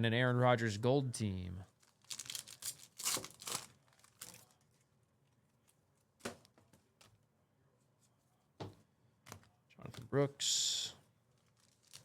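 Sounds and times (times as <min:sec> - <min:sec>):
card packs crinkling: 0:01.8 - 0:04.7, 0:11.4 - 0:12.0.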